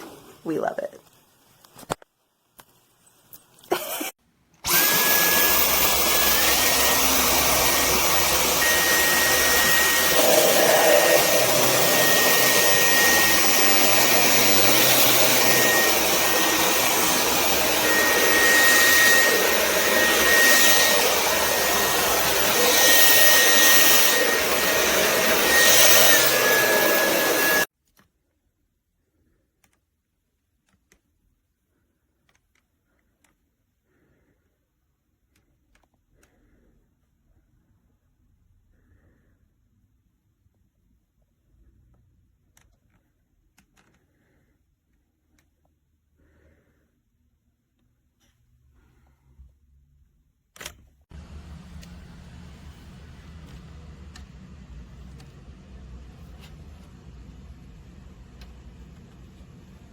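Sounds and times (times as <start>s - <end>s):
cordless vacuum running: 4.6s - 27.7s, 51.1s - 59.9s.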